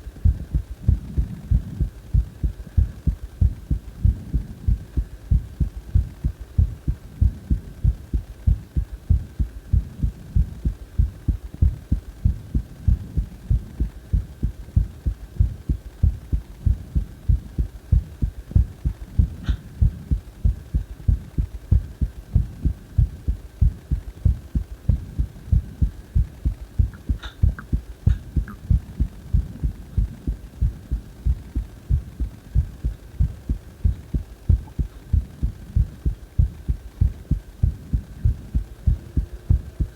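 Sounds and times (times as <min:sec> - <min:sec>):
faint high hum: 0:00.0 - 0:39.9
heartbeat thumps: 0:00.0 - 0:39.9
faint clicks: 0:26.8 - 0:28.8.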